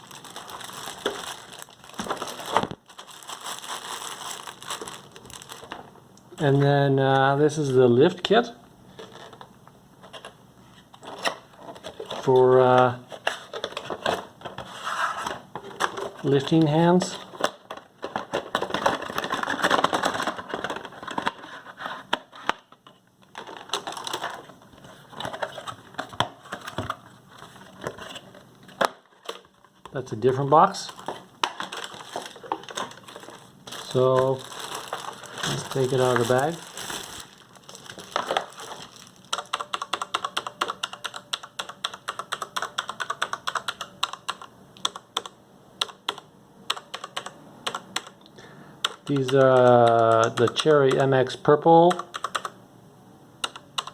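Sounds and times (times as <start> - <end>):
packaging crackling rustle: 0.0 - 5.9, 10.1 - 22.5, 23.2 - 39.8
mechanical keyboard keystrokes: 39.3 - 48.2, 48.8 - 51.1, 51.9 - 52.6, 53.4 - 53.9.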